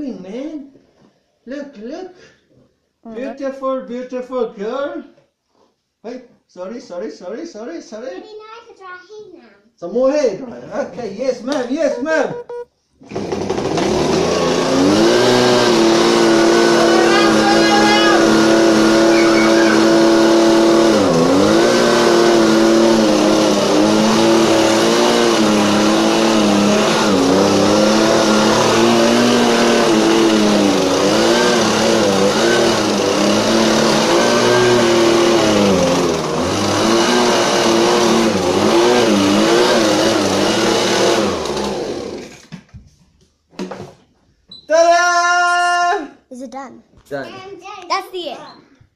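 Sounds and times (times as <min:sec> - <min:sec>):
blower running loudly: 0:13.0 - 0:42.5.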